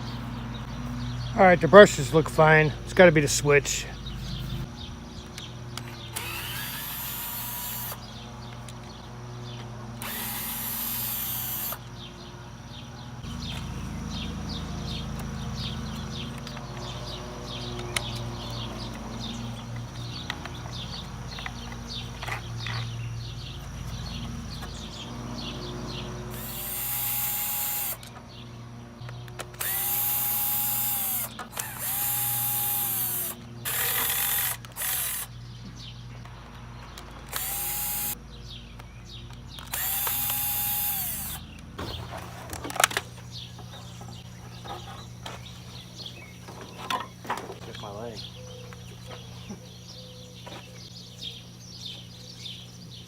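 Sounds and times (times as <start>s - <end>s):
cordless drill spinning: 6.1s - 8.0s, 10.0s - 11.8s, 26.3s - 28.1s, 29.5s - 35.4s, 37.2s - 38.2s, 39.6s - 41.4s.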